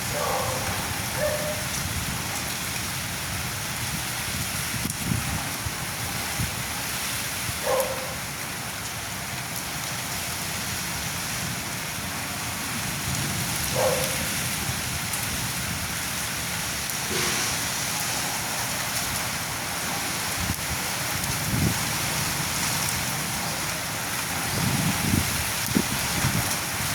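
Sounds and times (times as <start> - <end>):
heavy rain falling: 0.0 - 26.9.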